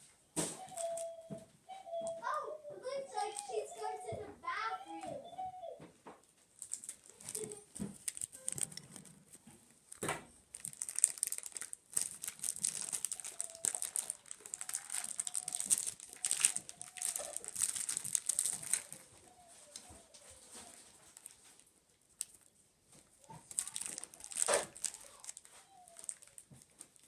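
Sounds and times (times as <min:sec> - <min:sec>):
plastic packaging crinkling and tearing: 0:06.5 - 0:27.0.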